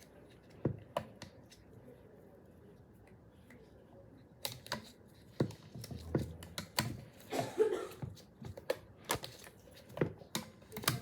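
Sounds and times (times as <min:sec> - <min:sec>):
small clicks and taps of instruments: 0:08.4 - 0:11.0.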